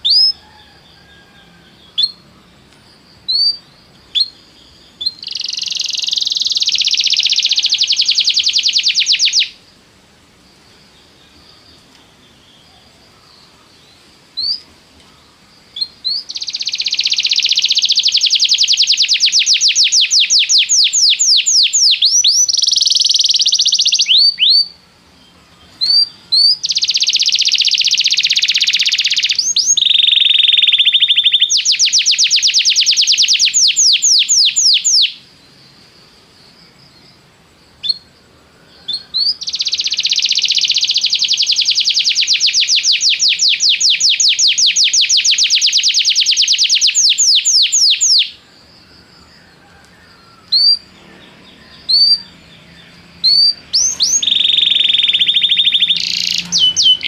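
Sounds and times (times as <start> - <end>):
canary chirps: 0.0 - 0.4, 3.2 - 9.6, 14.4 - 14.6, 15.7 - 24.8, 25.6 - 35.2, 38.8 - 48.4, 50.3 - 57.0
canary trilling: 5.1 - 9.6, 16.1 - 24.7, 26.0 - 35.2, 39.2 - 48.4, 51.7 - 57.0.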